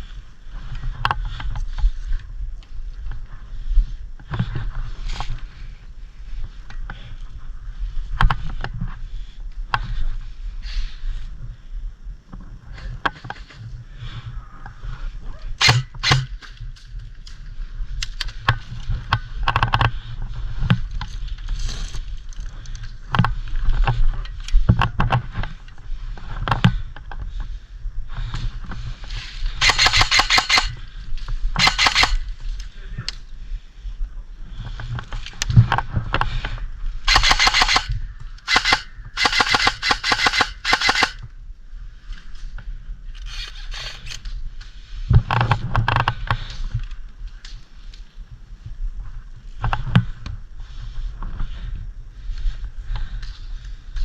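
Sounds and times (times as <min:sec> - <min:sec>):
single gunshots: 0:15.6 - 0:16.3
airsoft guns firing bursts: 0:15.6 - 0:16.4, 0:29.6 - 0:30.8, 0:31.6 - 0:32.3, 0:37.1 - 0:41.2.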